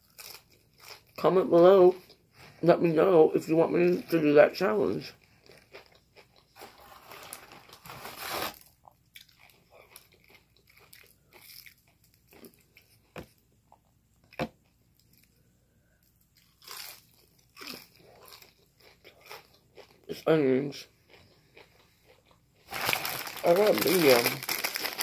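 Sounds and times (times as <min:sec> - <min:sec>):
crunchy food crunching: 0:05.2 - 0:12.9, 0:16.3 - 0:25.0.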